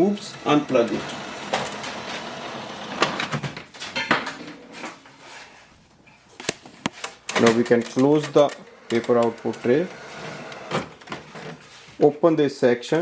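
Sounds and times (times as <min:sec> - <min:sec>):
inkjet printer mechanism whirring: 0:00.0 - 0:03.4, 0:07.3 - 0:11.6
sharp plastic clicks: 0:06.5 - 0:09.3.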